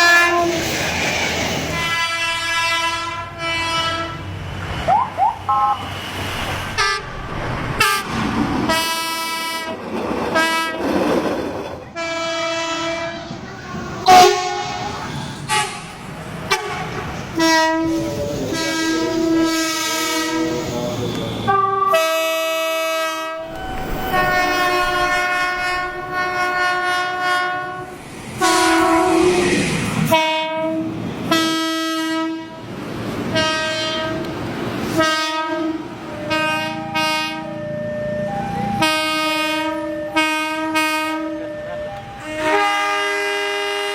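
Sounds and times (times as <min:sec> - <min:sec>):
train horn blasts: 0:00.0 - 0:00.6, 0:01.8 - 0:04.3, 0:08.7 - 0:09.8, 0:12.0 - 0:13.3, 0:14.0 - 0:15.9, 0:16.5 - 0:29.5, 0:30.1 - 0:32.6, 0:33.3 - 0:34.3, 0:34.9 - 0:37.6, 0:38.7 - 0:43.9
train rumble: 0:00.0 - 0:43.9.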